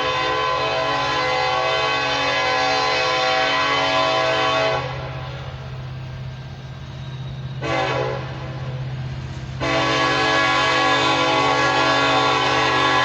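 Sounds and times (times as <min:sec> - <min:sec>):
locomotive air horn blasts: 0:00.0 - 0:05.5, 0:07.6 - 0:08.8, 0:09.6 - 0:13.0.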